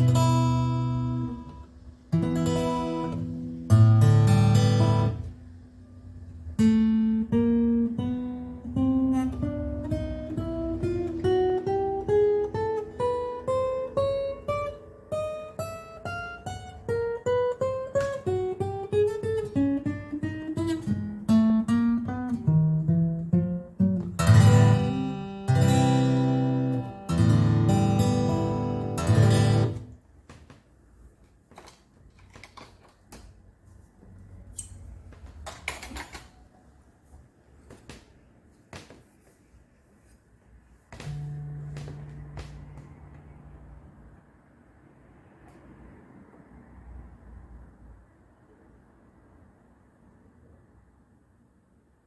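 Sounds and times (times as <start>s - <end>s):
acoustic guitar playing: 0.0s - 30.0s, 40.9s - 44.2s.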